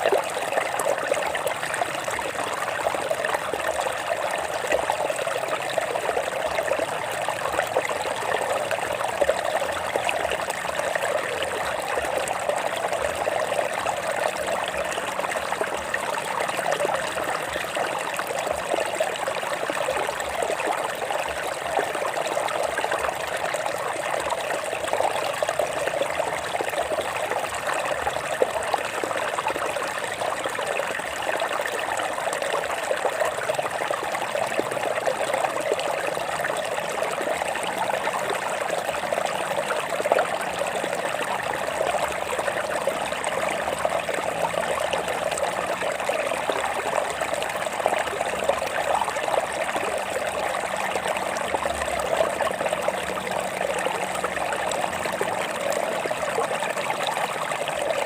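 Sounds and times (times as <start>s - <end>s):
water running over rocks: 0.0s - 58.0s.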